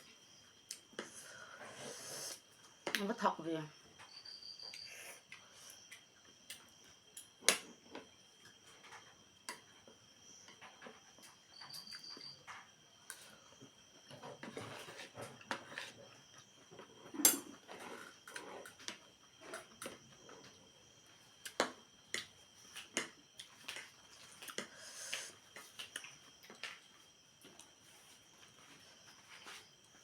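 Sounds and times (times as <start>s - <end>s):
crickets trilling: 0.0s - 30.0s
eating crunches and mouth clicks: 23.4s - 26.8s.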